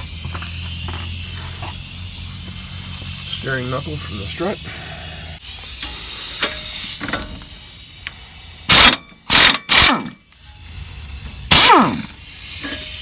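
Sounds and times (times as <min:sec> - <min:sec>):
pneumatic wrench bursts: 0:00.0 - 0:13.0.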